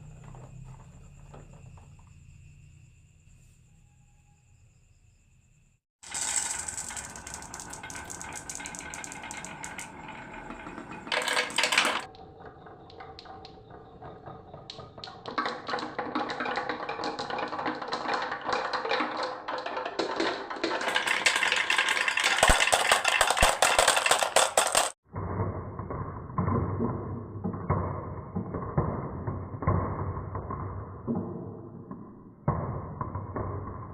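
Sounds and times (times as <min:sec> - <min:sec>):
marbles clattering down wooden run: 0:06.0 - 0:25.0.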